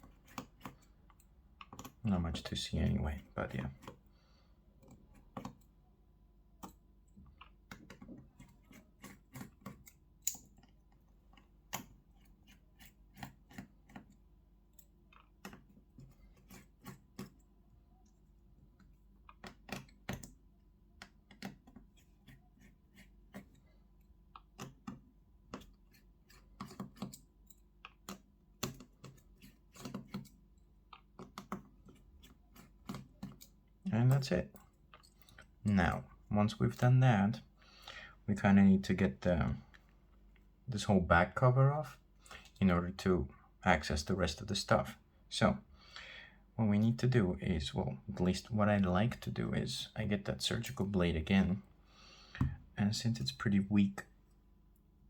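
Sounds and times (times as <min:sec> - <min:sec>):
screwdriver clicks and taps: 0:21.0 - 0:21.8, 0:24.4 - 0:25.7.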